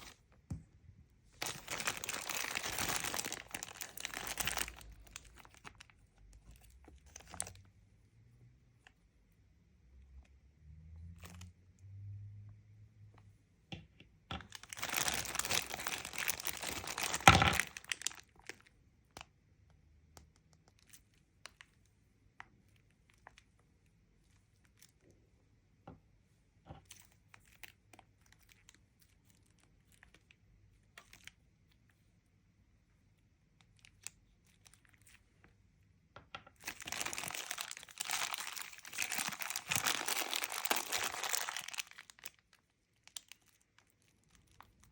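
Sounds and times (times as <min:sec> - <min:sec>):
packaging being torn and crinkled: 0:01.4 - 0:06.0, 0:14.5 - 0:18.7, 0:36.6 - 0:44.9.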